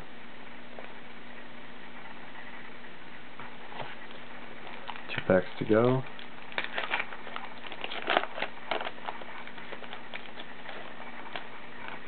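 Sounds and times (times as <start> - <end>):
wrapper crinkling: 4.6 - 12.0.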